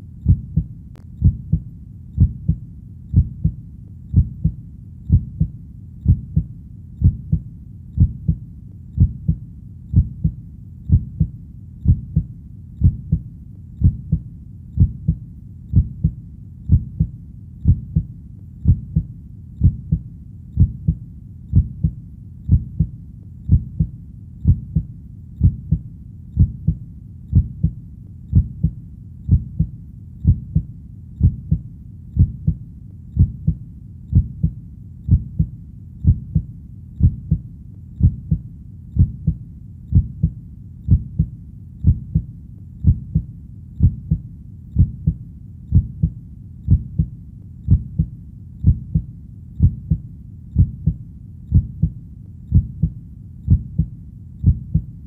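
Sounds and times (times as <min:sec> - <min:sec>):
heartbeat thumping: 0:00.0 - 0:55.0.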